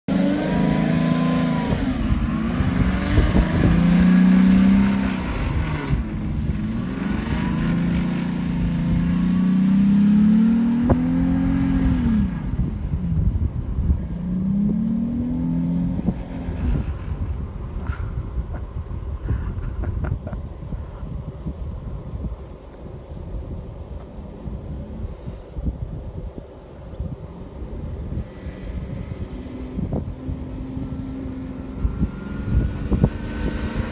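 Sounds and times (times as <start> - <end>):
engine revving: 0.0 - 12.7, 14.2 - 17.0, 28.2 - 33.9.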